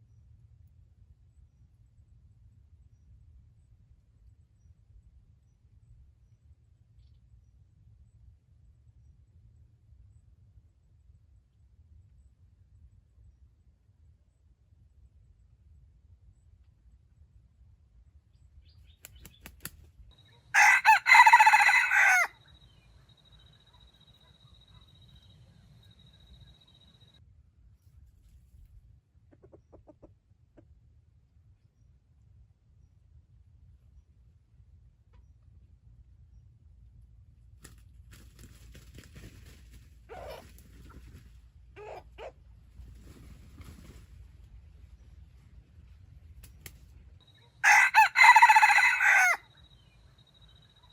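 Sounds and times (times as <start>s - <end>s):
rooster crowing: 20.5s - 22.6s, 47.6s - 49.8s
faint low rumble: 22.4s - 47.6s.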